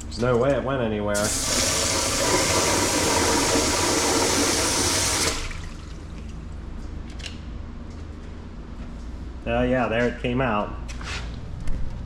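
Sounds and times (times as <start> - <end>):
water rushing through pipe: 1.2 - 5.8
low steady hum: 5.0 - 12.0.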